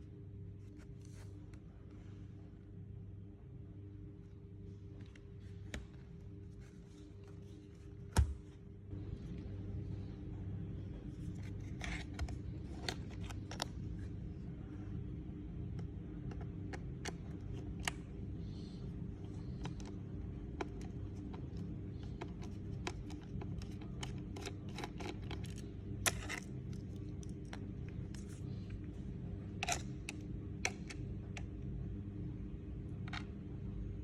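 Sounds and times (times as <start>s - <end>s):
steady low hum: 0.0s - 34.0s
tools and plastic parts clicking: 22.1s - 28.3s.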